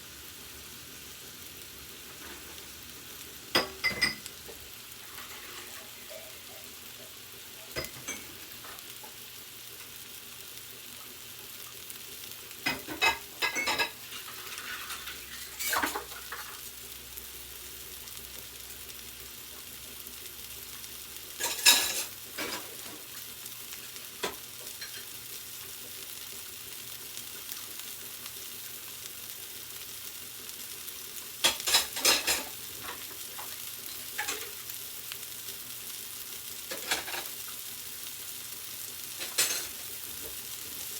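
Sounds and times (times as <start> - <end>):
meatballs sizzling in a pan: 0.0 - 40.9
utensil scraping and clinking: 5.0 - 6.3.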